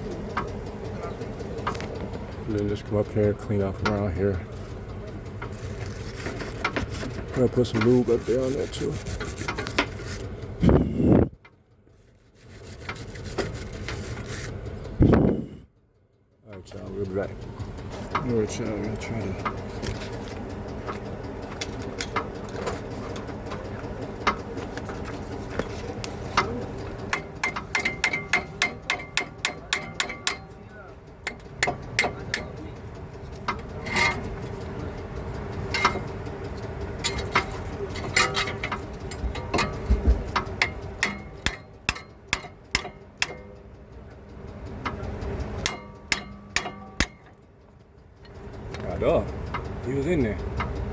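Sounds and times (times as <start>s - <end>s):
steady hum: 0.0s - 11.4s, 12.4s - 15.7s, 16.9s - 50.9s
scraping on metal bracket: 5.4s - 11.2s, 12.3s - 14.6s, 25.2s - 30.5s, 33.4s - 34.6s, 37.0s - 43.5s.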